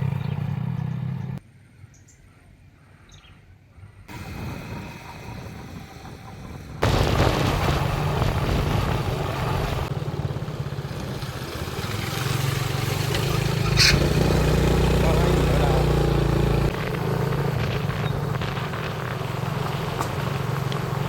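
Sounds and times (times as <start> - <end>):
motorbike engine running: 0.0 - 1.4, 4.1 - 21.0
wind buffeting microphone: 4.1 - 10.4.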